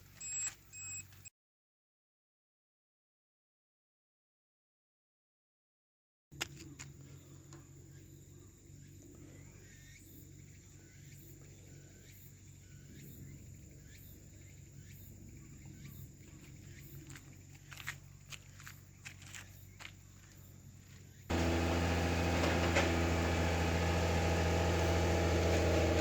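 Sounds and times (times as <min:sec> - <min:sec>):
insects chirping: 0:06.4 - 0:21.3.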